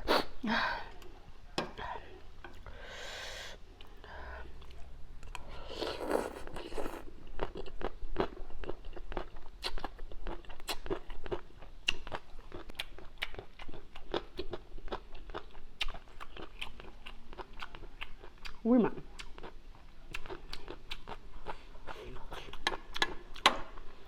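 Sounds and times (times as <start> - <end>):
chewing crunchy food: 4.6 - 23.9.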